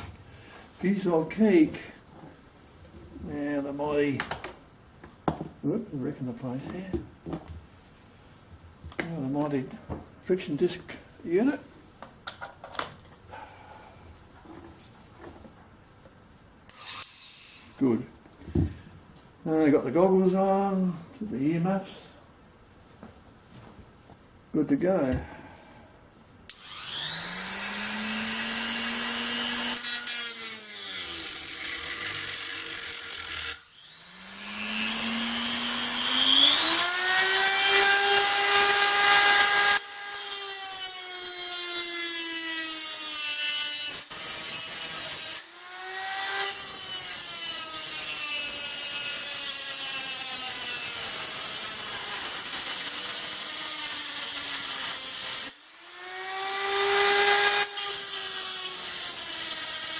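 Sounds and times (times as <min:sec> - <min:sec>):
die grinder cutting steel tubing: 0:16.7 - 0:17.8, 0:26.5 - 0:59.9.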